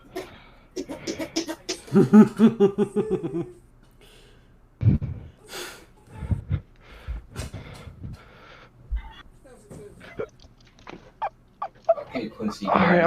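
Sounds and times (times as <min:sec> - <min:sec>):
person laughing: 0:00.8 - 0:03.6, 0:11.2 - 0:13.0
quiet breaths: 0:03.8 - 0:10.0.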